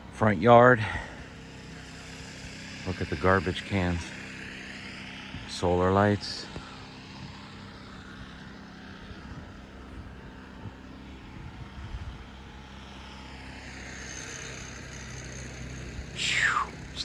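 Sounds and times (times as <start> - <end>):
distant engine droning: 0.0 - 17.0
thin high whine: 0.6 - 8.6, 12.8 - 17.0.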